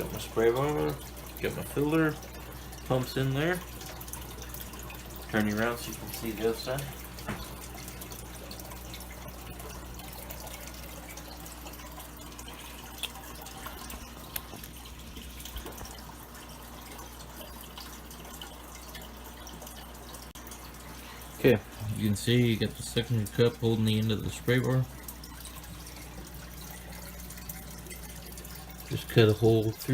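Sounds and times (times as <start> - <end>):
small water splashes: 0.0 - 21.9
pump humming: 0.0 - 29.9
water trickling and dripping: 0.0 - 29.9.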